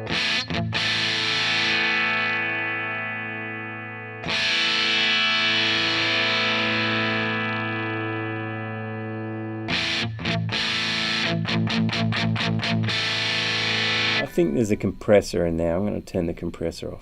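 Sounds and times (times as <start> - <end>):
distorted electric guitar: 0.0 - 15.0.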